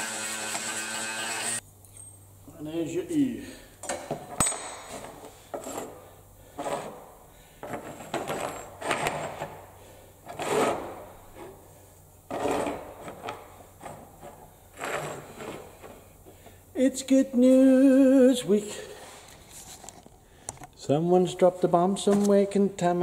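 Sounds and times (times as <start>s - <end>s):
scraping and rubbing strokes: 10.3s - 11.7s, 12.3s - 16.2s.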